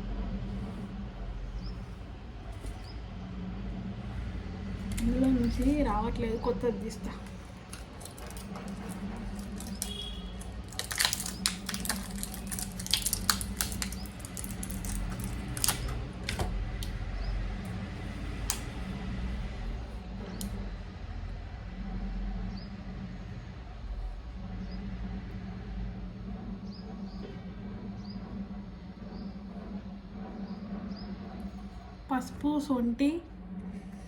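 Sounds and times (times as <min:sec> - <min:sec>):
steady low hum: 0:00.0 - 0:34.0
packet crackling: 0:04.8 - 0:06.0, 0:06.8 - 0:17.0.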